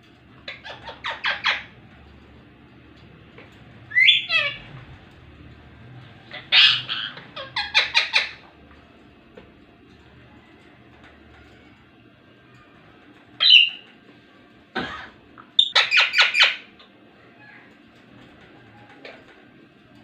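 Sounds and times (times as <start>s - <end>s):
parrot calling: 0.4s - 1.8s, 3.9s - 4.8s, 6.2s - 8.6s, 13.4s - 13.8s, 15.6s - 16.7s.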